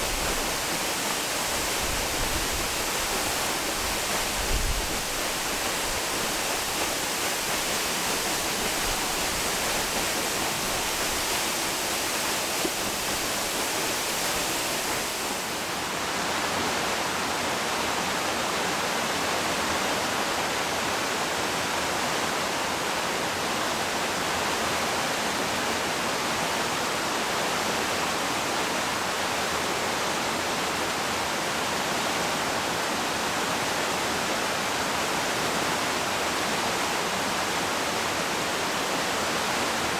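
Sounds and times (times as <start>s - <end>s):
waterfall pouring: 0.0s - 15.7s.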